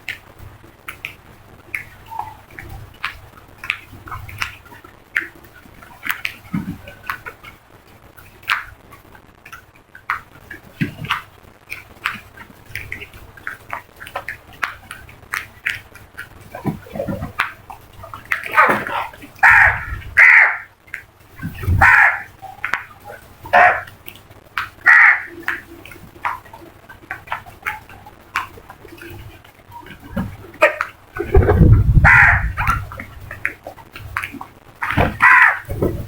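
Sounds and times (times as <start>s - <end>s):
crows cawing: 18.5s - 20.7s, 21.8s - 22.3s, 23.5s - 23.9s, 24.8s - 25.6s, 32.0s - 32.8s, 34.8s - 35.7s.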